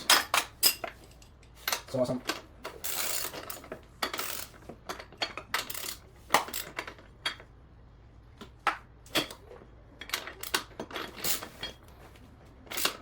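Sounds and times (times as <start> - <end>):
metal tools clinking: 0.0 - 6.0.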